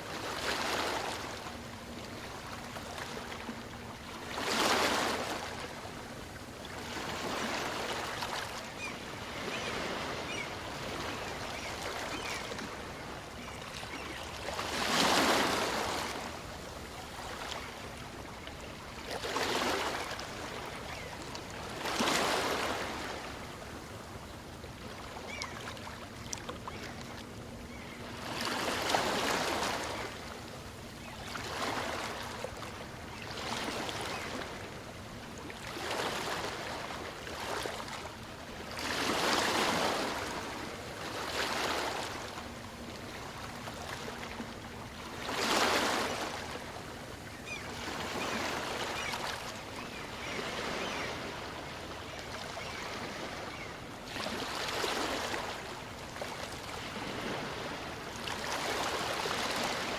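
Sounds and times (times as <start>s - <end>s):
small waves breaking: 0.0s - 59.9s.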